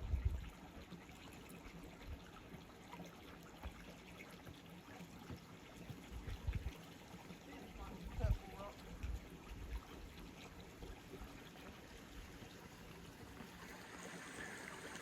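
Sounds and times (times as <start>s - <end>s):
creek bubbling over rocks: 0.0s - 15.0s.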